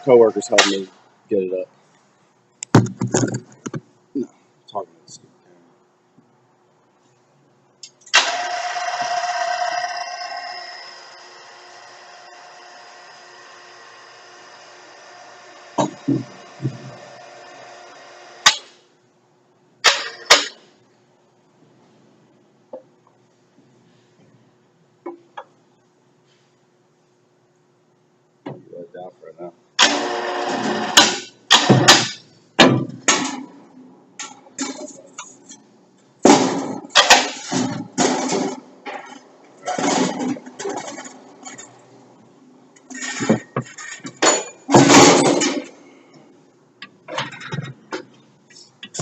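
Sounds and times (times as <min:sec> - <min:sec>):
steady shop hum: 0:00.0 - 0:49.0
dull thuds: 0:02.7 - 0:03.9
metallic clanks and bangs: 0:36.2 - 0:41.6, 0:42.9 - 0:45.7.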